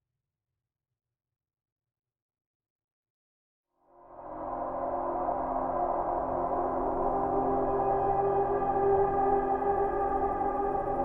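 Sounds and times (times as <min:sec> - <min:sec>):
ambient music drone: 0:03.8 - 0:11.0.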